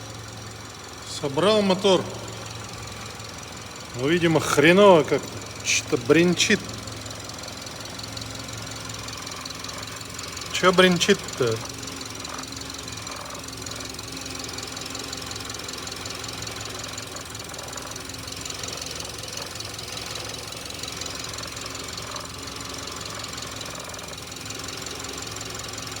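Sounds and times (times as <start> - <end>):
car engine knocking rattle: 0.0 - 26.0.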